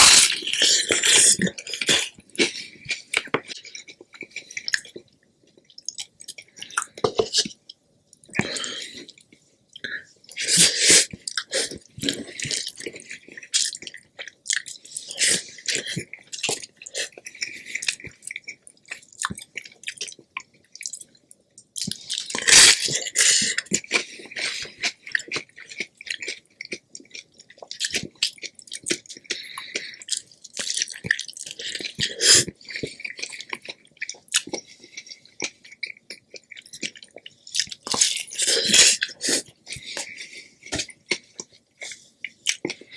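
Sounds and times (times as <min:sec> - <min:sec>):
person chewing: 0:00.0 - 0:42.9.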